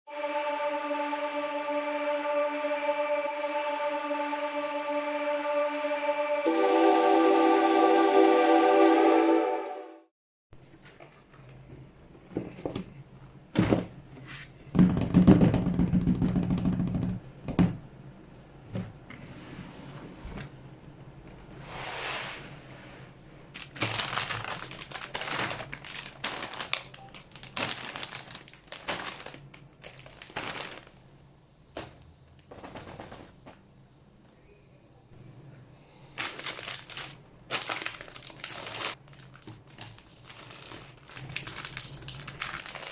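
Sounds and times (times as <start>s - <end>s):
plastic crinkling: 23.6s - 31.1s, 36.2s - 42.9s.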